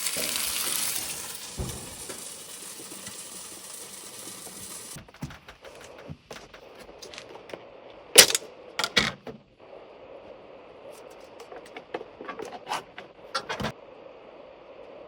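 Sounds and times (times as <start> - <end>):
cooking utensils clattering: 0.0 - 5.0, 8.2 - 9.2, 11.4 - 13.7.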